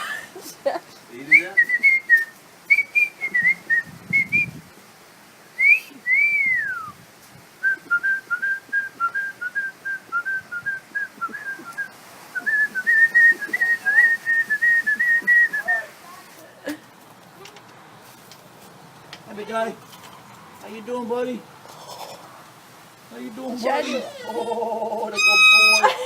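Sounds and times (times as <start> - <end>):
cockatoo whistling: 1.3 - 4.6, 5.6 - 7.0, 7.6 - 15.9, 25.1 - 25.9.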